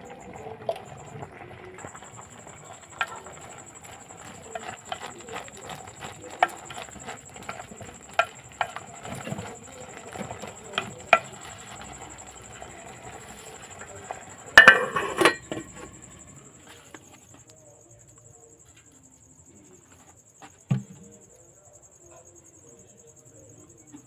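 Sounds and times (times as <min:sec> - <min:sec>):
utensil stirring food in pot: 0:00.0 - 0:17.5
spoon knocking against pot: 0:01.8 - 0:16.4.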